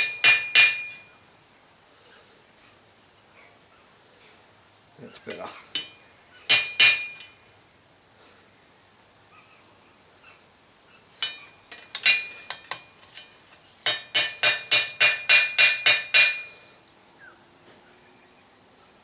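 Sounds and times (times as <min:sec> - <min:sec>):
hammer striking steel on anvil: 0:00.0 - 0:01.1, 0:05.8 - 0:07.4, 0:11.2 - 0:13.3, 0:13.9 - 0:16.6.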